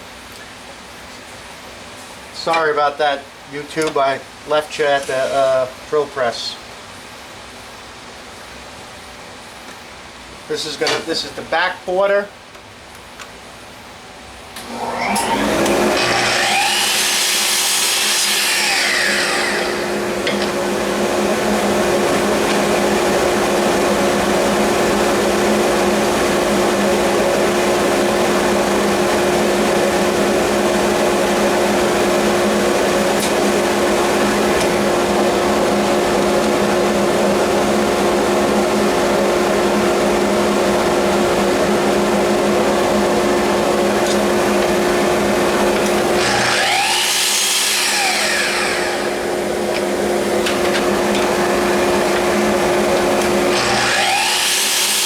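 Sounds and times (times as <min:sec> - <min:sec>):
electric power tool motor humming: 0:14.7 - 0:55.0.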